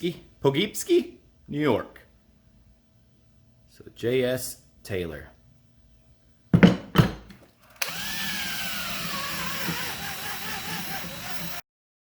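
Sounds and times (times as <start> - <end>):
small power tool whining: 7.7 - 11.6.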